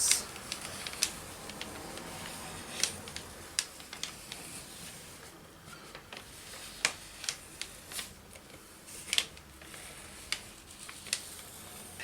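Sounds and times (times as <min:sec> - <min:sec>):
paper rustling: 0:00.0 - 0:12.0.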